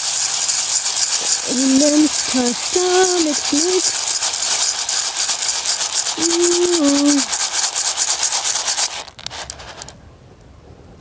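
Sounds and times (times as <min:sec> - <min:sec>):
popcorn kernels rattling in container: 0:00.0 - 0:10.0
person humming: 0:01.4 - 0:04.0, 0:06.2 - 0:07.3.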